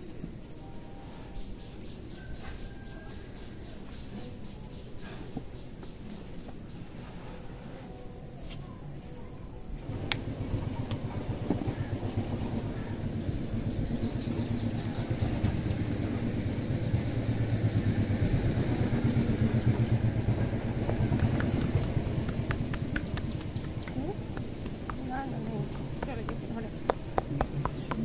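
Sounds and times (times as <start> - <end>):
hands rubbing and tapping hair: 20.8 - 28.0.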